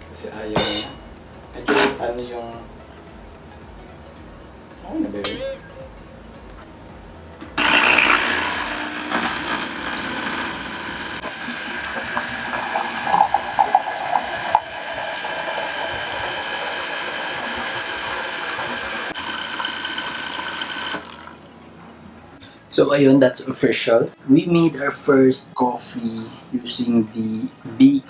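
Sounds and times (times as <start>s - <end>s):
espresso machine pump running: 7.5s - 21.5s.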